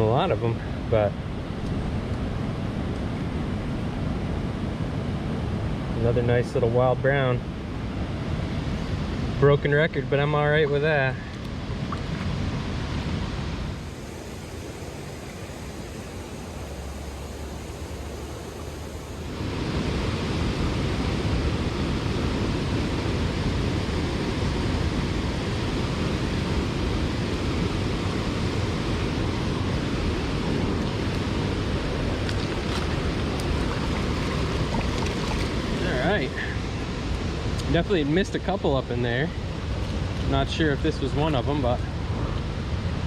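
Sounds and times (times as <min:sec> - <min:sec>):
stream rushing over rocks: 0:29.7 - 0:37.8.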